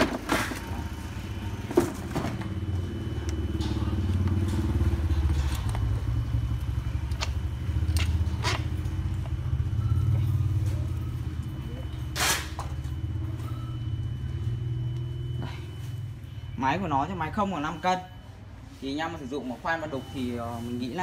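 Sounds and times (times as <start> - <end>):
motor with pulsing rumble: 0.6 - 16.6.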